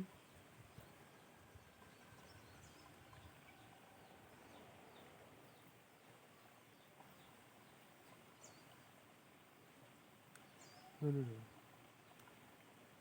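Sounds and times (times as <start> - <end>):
faint bird chirps: 10.4 - 12.3.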